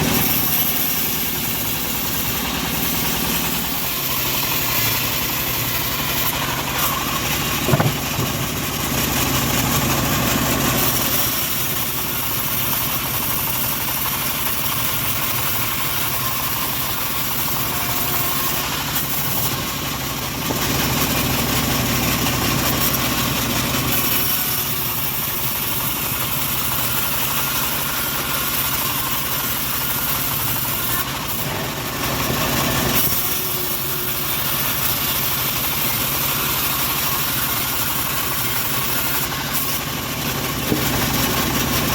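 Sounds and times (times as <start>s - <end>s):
bandsaw mill engine sawing log: 0.0s - 41.9s
sharp knock: 7.7s - 8.3s.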